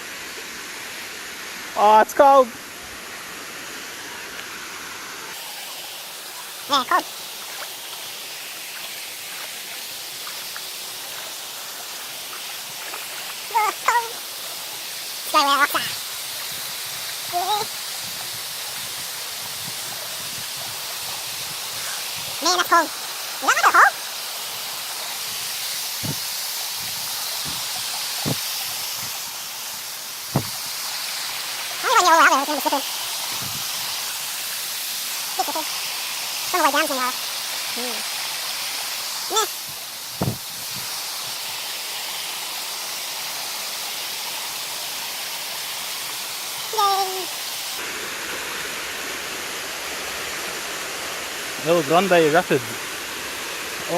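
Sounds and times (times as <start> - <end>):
waterfall and creek water hissing: 0.0 - 53.9
dull low thumps: 26.0 - 26.2, 26.8 - 29.2, 30.4 - 30.6, 40.2 - 40.8
low thump: 30.4 - 30.6, 40.2 - 40.4.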